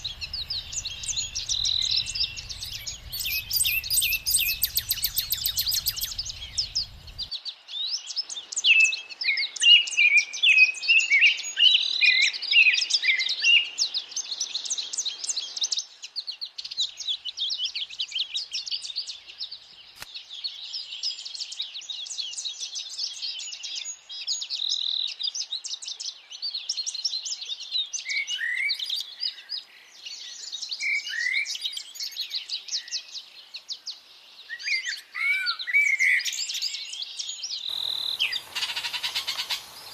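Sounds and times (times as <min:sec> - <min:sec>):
downward-sliding whistled bird notes: 0:00.0 - 0:07.3
songbirds chirping and trilling: 0:00.0 - 0:39.9.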